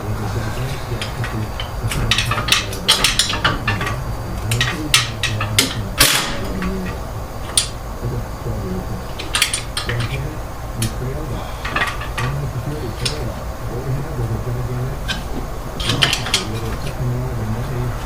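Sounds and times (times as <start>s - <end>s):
metal tools clinking and knocking: 0.0s - 7.8s, 9.1s - 13.6s, 15.0s - 17.0s
steady low hum: 0.0s - 18.0s.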